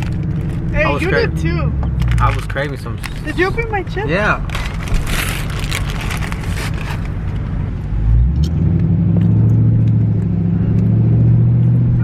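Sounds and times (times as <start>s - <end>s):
car engine drone: 0.0s - 12.0s
road noise: 0.0s - 12.0s
rustling: 4.4s - 7.4s.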